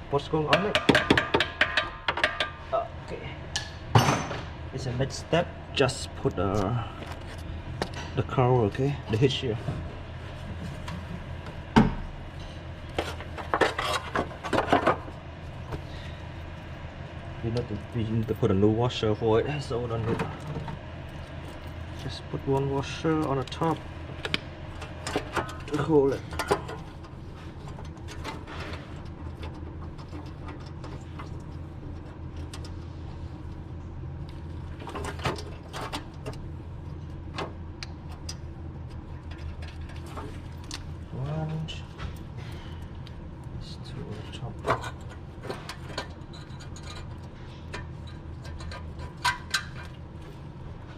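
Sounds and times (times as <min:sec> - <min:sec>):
steady low hum: 0:00.0 - 0:50.9
clinks and rattles: 0:44.5 - 0:50.0.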